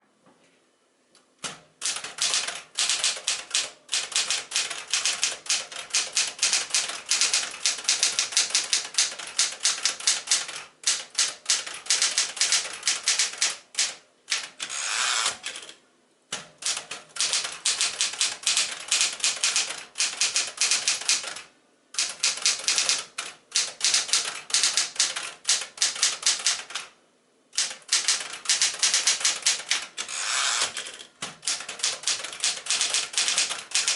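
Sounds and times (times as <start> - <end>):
manual typewriter key strikes: 1.4 - 26.9, 27.6 - 33.9.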